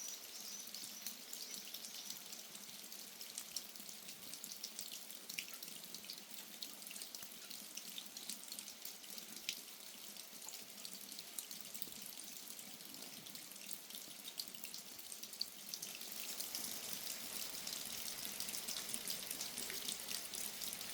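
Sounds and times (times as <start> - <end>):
drips and splashes: 0.0 - 20.9
steady rain falling: 15.4 - 20.9.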